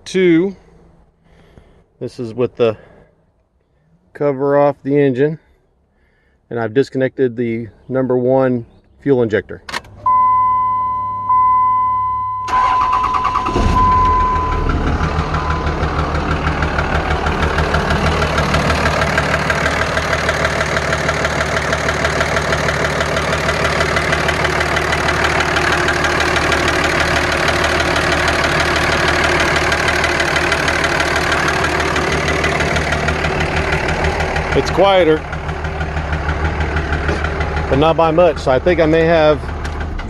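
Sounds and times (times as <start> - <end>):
diesel engine cranking and idling: 8.8 - 40.0
electronic chime: 10.1 - 16.0
engine knock: 14.6 - 40.0.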